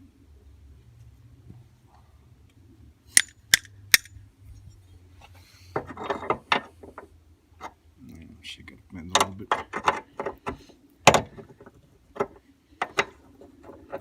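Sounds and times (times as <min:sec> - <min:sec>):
sharp metallic clicks: 0:03.1 - 0:04.2.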